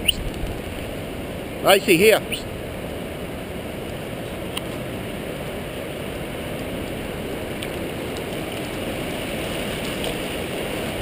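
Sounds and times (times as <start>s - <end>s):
flooded river gushing: 0.0s - 11.0s.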